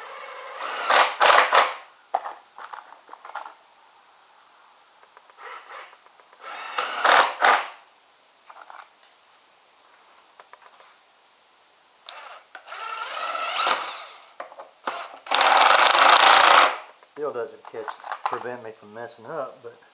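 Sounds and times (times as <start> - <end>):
impact driver driving screws into wood: 0.0 - 1.9, 5.4 - 7.8, 12.1 - 14.2, 14.8 - 16.9.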